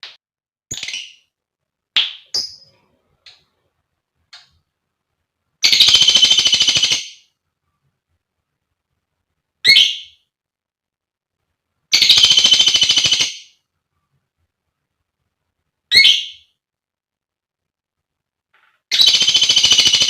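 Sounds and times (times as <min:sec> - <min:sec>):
lovebird chirping: 0:05.6 - 0:07.3, 0:09.6 - 0:10.2, 0:15.9 - 0:16.5, 0:18.9 - 0:20.0
lovebird rattling trill: 0:19.0 - 0:20.0.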